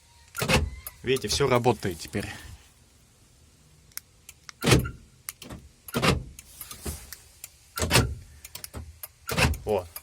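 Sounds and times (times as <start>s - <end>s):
door lock motor whirr and clunk: 4.6s - 6.4s, 7.8s - 9.6s.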